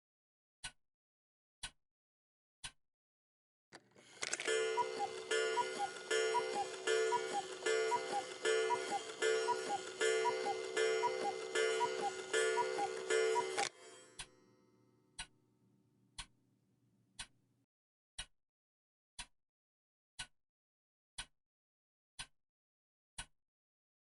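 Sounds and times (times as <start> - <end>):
cuckoo clock calling: 4.1 - 14.3
clock ticking: 4.2 - 14.3.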